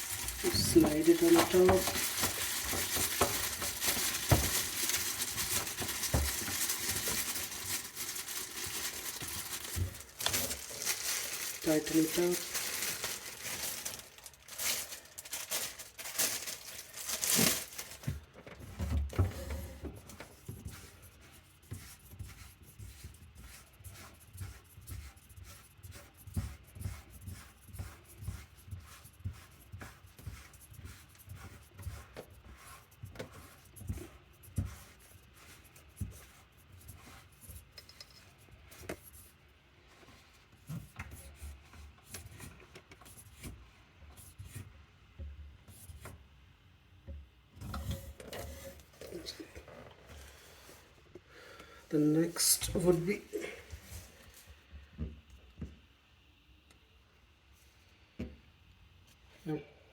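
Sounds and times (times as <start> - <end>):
plastic scraping and rustling: 0.0 - 20.8.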